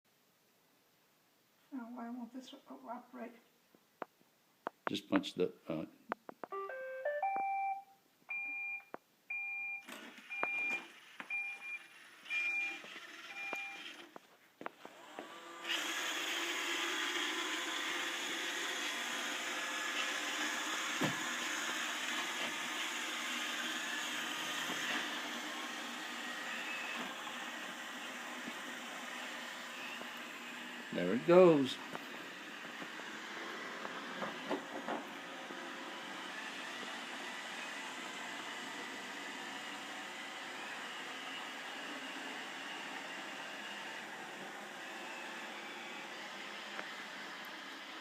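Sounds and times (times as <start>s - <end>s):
rising electronic tune: 6.5s - 7.9s
two-note beeps: 6.5s - 9.7s
vacuum motor and brushes running: 9.9s - 48.0s.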